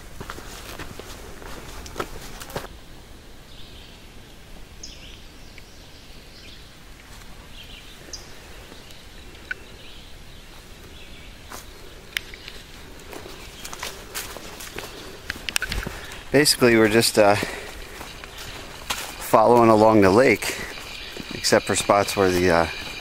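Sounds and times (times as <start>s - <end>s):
footsteps on a trail: 0.0s - 2.7s, 10.4s - 23.0s
small birds chirping: 3.4s - 23.0s.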